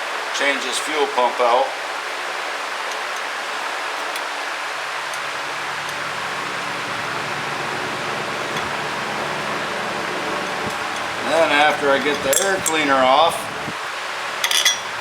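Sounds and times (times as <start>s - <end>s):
background hiss: 0.0s - 15.0s
low hum: 5.1s - 13.8s.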